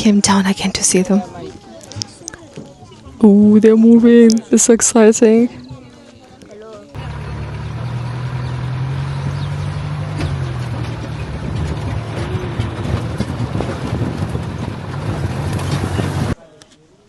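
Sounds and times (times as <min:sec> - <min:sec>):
road noise: 0:00.0 - 0:16.4
vehicle engine humming: 0:03.5 - 0:16.4
rattles and knocks: 0:07.0 - 0:16.4.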